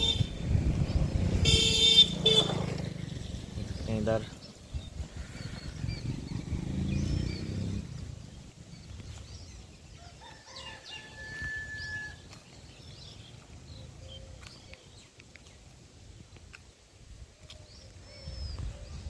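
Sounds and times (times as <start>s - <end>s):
rooster crowing: 10.0s - 12.2s.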